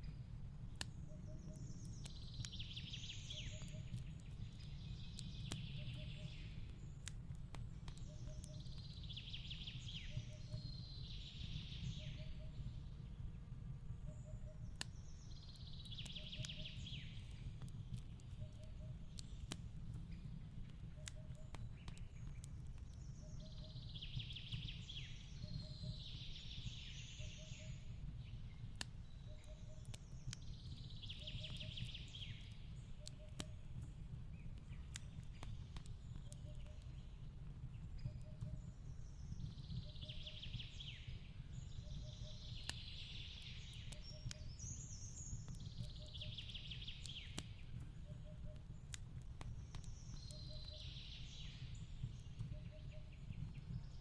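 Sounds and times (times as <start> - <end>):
songbird singing: 0.0 - 54.0
wood fire crackling and popping: 0.0 - 54.0.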